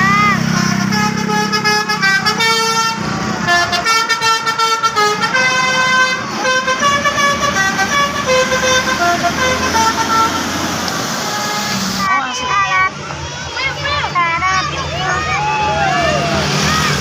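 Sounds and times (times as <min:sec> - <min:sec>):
bus musical horn playing tune: 0:00.0 - 0:12.7.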